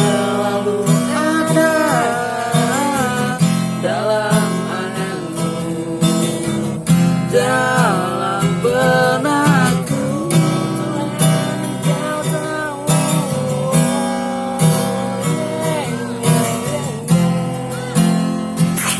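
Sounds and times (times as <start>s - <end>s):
person singing: 0.0s - 18.9s
strummed acoustic guitar: 0.0s - 18.9s.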